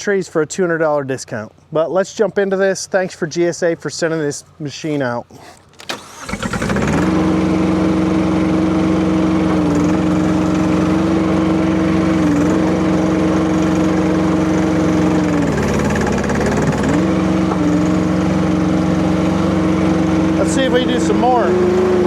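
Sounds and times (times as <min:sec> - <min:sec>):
diesel engine running at high speed: 0:05.8 - 0:22.0.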